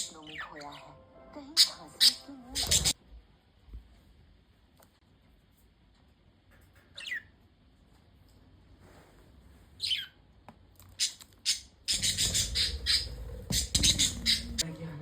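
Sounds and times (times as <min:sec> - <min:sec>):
budgerigars chirping and squawking: 0:00.0 - 0:03.0, 0:06.9 - 0:07.3, 0:09.8 - 0:10.2, 0:11.0 - 0:14.6.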